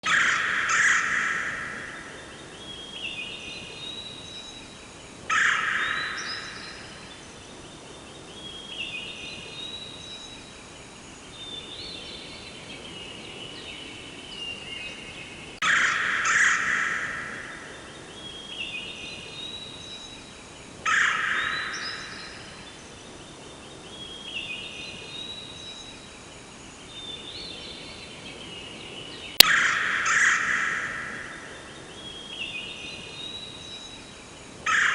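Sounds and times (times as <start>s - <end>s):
loud bird calls: 0.0s - 3.8s, 5.3s - 7.0s, 15.6s - 18.9s, 20.8s - 22.6s, 29.3s - 33.5s, 34.6s - 34.9s
steady background hiss: 0.0s - 34.9s.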